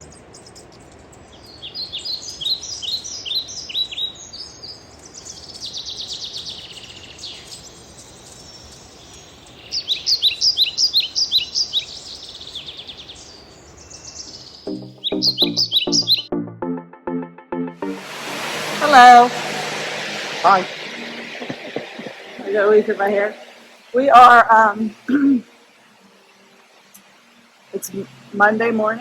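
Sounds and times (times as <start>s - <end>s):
background hiss: 0.0s - 16.2s, 17.8s - 29.0s
birds singing: 0.0s - 16.4s.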